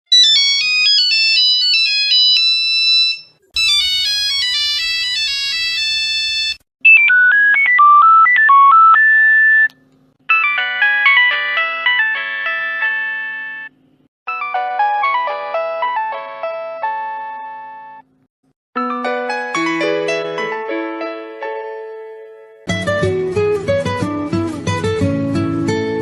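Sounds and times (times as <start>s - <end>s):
electronic phone ringtone melodies: 0.1s - 9.7s, 10.3s - 13.7s, 14.3s - 18.0s.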